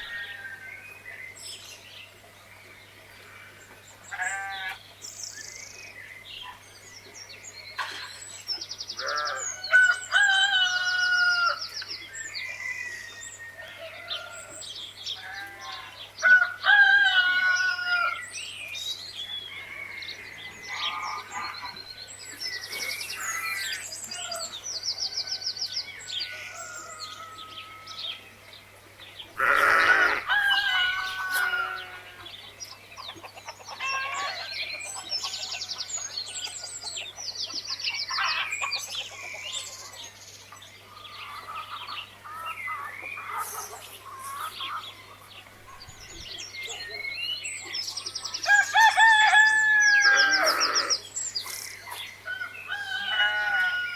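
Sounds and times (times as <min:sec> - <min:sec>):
chicken calls: 0:29.3 - 0:40.0, 0:40.9 - 0:45.8, 0:48.4 - 0:53.9
small birds chirping: 0:50.0 - 0:53.0.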